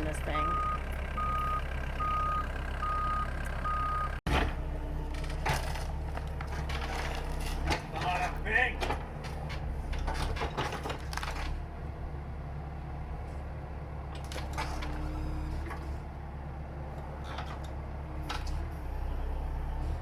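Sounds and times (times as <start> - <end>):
heavy machine engine humming: 0.0 - 20.0
machine clunks and scrapes: 4.3 - 11.8, 14.1 - 16.2, 17.0 - 20.0.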